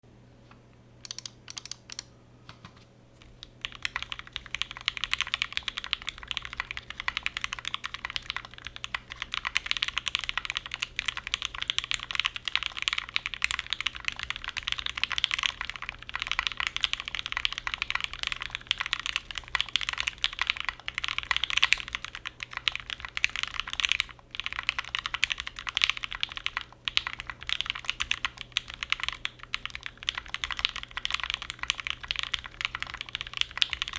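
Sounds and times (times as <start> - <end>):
typing on mechanical keyboard: 1.0 - 2.1, 3.4 - 33.9.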